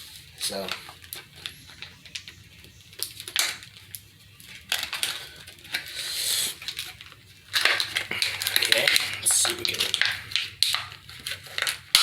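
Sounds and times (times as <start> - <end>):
plastic packaging crackling: 0.0 - 12.0.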